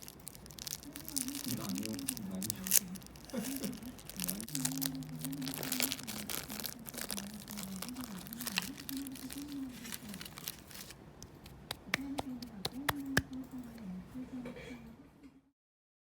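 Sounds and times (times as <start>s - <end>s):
packaging crinkling and tearing: 0.0s - 11.9s.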